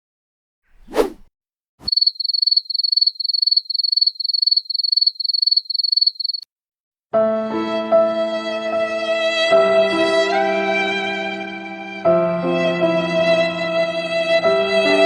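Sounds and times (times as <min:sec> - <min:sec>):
short whoosh: 0:00.7 - 0:01.3
crickets chirping: 0:01.9 - 0:06.4.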